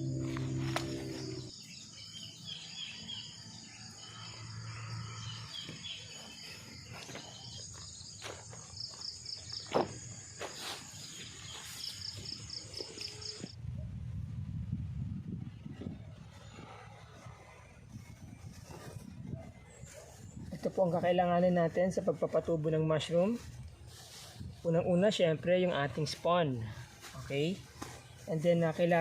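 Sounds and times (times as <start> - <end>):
insects trilling: 0.0 - 13.6
knocks and rustles: 6.9 - 10.6.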